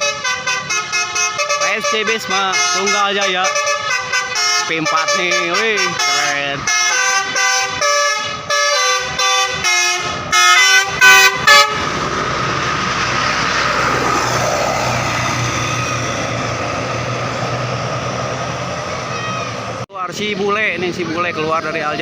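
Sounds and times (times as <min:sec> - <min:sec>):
multi-tone musical air horn: 0:00.0 - 0:11.9
bus engine and road noise: 0:00.0 - 0:22.0.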